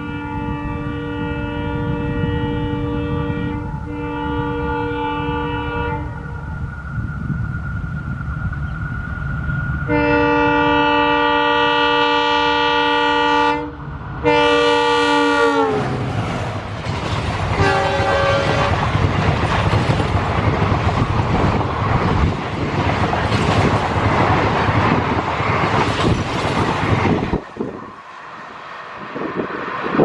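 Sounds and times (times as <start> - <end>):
locomotive air horn: 0.0 - 6.5, 9.9 - 16.0, 17.6 - 18.8
train coaches rumbling on track: 0.0 - 30.0.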